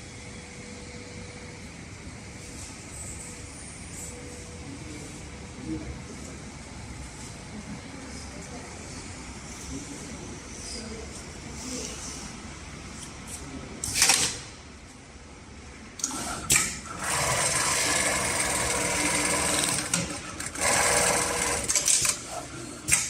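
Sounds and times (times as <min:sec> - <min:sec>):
sewing machine stitching: 0:16.0 - 0:22.3.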